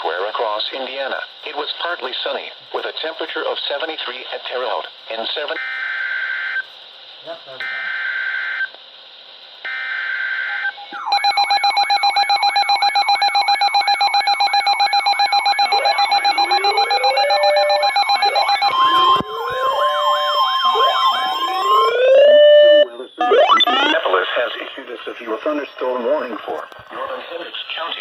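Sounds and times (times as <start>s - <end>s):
sirens winding up: 9.7s - 24.6s
buzzy data header screech: 10.4s - 19.2s, 20.7s - 26.4s
steady weather radio alert tone: 10.5s - 28.0s
rapidly pulsing electronic tones: 10.6s - 26.7s
fast yelping siren: 12.3s - 24.0s.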